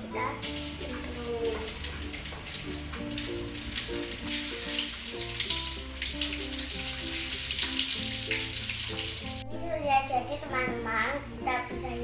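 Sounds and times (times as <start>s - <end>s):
background music: 0.0s - 12.0s
food frying in hot oil: 0.2s - 9.4s.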